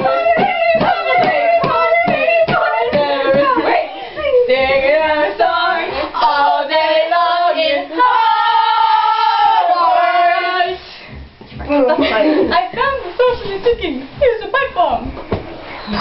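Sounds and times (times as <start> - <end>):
sharp tapped beat: 0.0 - 3.6
children singing: 0.0 - 10.9.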